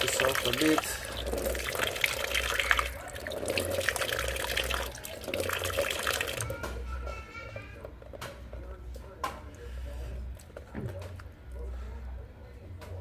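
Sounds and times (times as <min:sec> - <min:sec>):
water running and splashing: 0:00.0 - 0:06.6.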